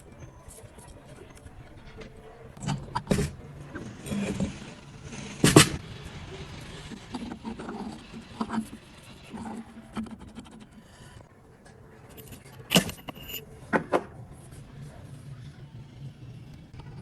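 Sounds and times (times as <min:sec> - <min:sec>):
metal tools clinking: 0:11.7 - 0:15.0.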